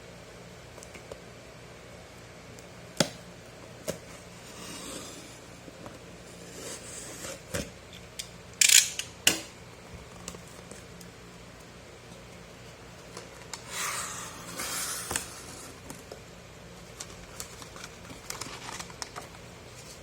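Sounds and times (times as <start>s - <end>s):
package crinkling or tearing: 17.0s - 19.4s.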